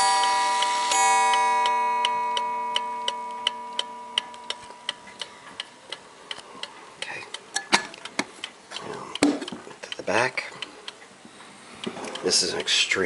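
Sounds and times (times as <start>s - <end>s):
clock gong ringing: 0.0s - 5.2s
mantel clock ticking: 0.0s - 13.0s.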